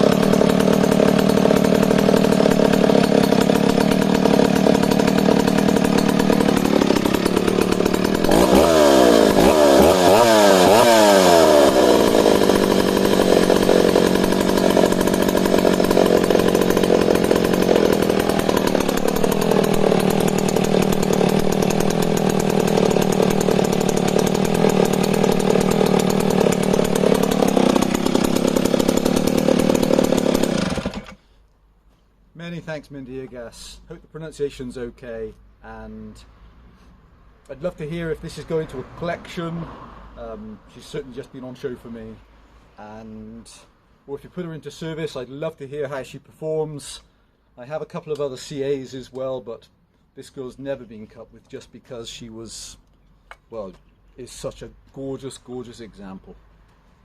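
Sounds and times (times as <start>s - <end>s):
chainsaw idling and revving: 0.0s - 31.2s.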